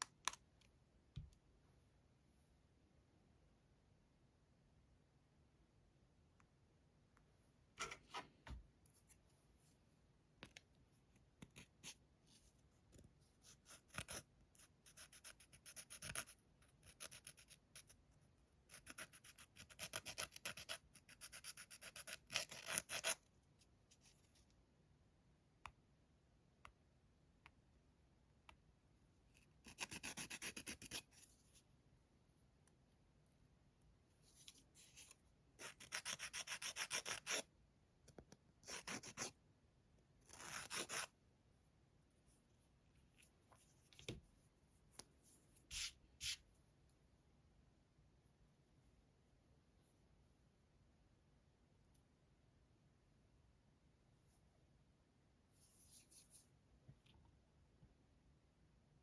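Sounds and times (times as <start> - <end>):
nail file rubbing fingernails: 13.5 - 17.9, 18.7 - 23.2, 29.6 - 31.3, 35.0 - 37.4, 38.6 - 39.3, 40.3 - 41.1.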